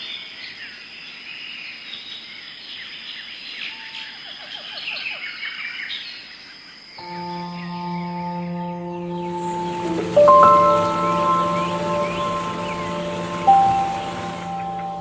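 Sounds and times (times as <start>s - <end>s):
birds chirping and trilling: 7.0s - 15.0s
low sustained ringing tone: 7.0s - 15.0s.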